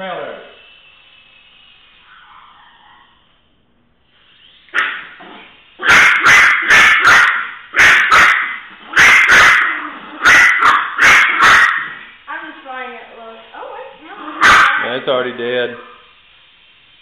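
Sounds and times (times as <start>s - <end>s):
small dog barking: 5.8s - 12.1s, 14.4s - 15.0s.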